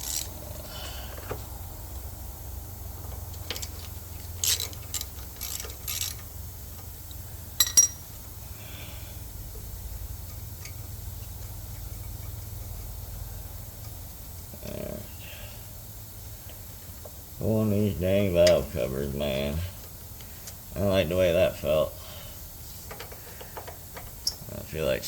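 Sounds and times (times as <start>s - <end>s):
metal tools clicking and scraping: 0.0s - 0.4s, 3.5s - 6.3s, 7.6s - 8.1s
steady low hum: 0.0s - 25.0s
sharp metal clinks: 7.6s - 8.1s.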